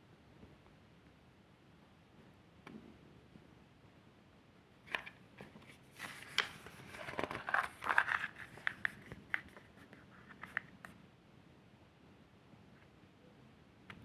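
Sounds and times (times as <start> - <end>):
packaging crinkling and rustling: 4.9 - 10.7
packaging clicks and taps: 6.0 - 9.6.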